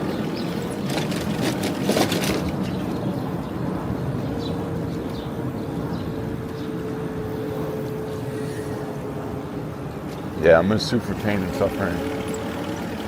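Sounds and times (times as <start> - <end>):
street traffic rumble: 0.0 - 13.0
steady hum: 2.6 - 13.0.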